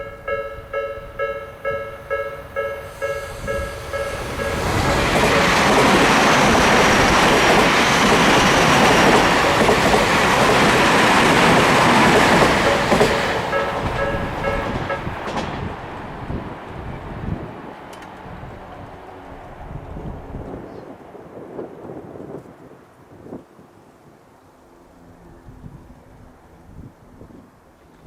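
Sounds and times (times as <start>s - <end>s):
railroad crossing bell dinging: 0.0s - 15.3s
electric train passing: 0.0s - 28.0s.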